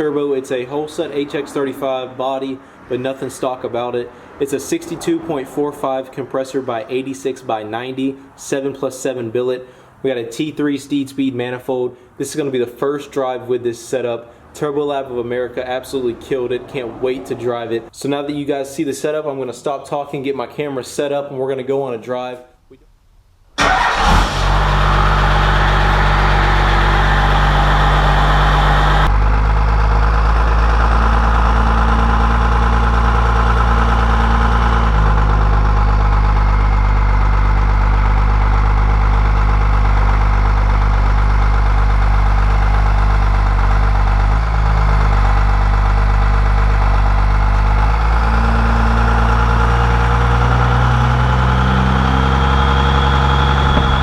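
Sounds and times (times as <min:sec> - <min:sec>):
diesel engine droning: 0:23.6 - 0:54.0
turbo whistle: 0:52.3 - 0:54.0.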